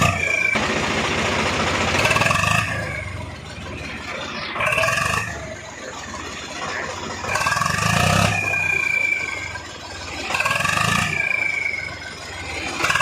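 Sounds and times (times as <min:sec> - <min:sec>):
turbo whistle: 0:00.0 - 0:00.6, 0:07.2 - 0:13.0
tractor diesel engine revving: 0:00.0 - 0:13.0.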